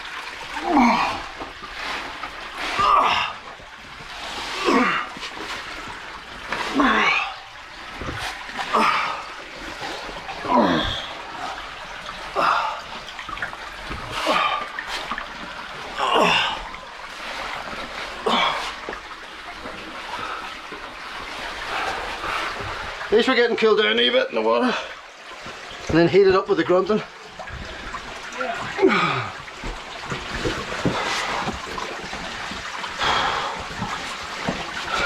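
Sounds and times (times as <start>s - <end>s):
water splashing: 0.0s - 35.0s
person grunting with effort: 10.4s - 11.1s.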